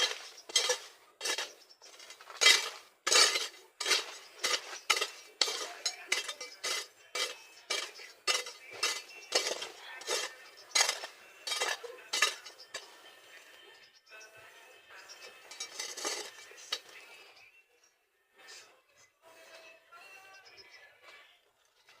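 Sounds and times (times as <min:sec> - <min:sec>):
metal tool striking soil: 0:00.0 - 0:13.0, 0:15.2 - 0:16.9.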